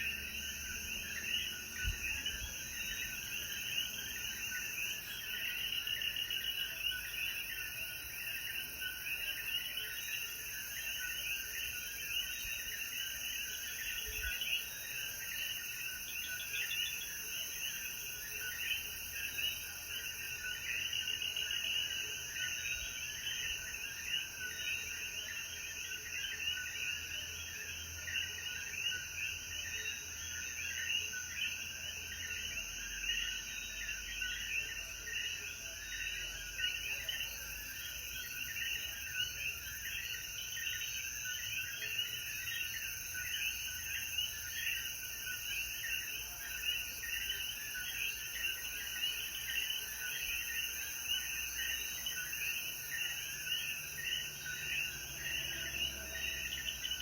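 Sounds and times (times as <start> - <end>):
frogs chirping: 0.0 - 57.0
high insect drone: 28.1 - 57.0.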